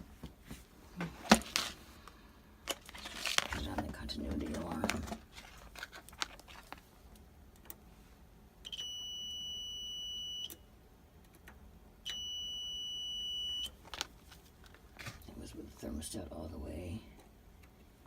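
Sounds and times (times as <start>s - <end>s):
multimeter high-pitched beeps: 8.7s - 10.6s, 12.1s - 13.7s.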